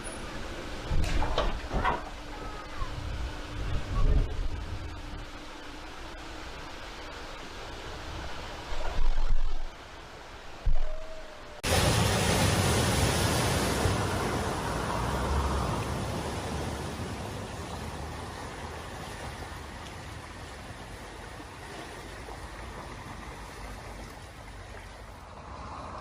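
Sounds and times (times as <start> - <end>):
vehicle engine rumble: 0.0 - 26.0
water rushing: 0.0 - 26.0.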